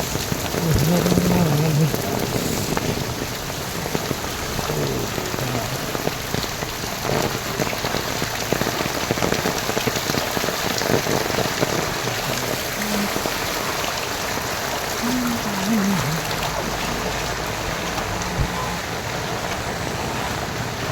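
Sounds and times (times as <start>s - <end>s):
heavy rain pouring: 0.0s - 20.9s.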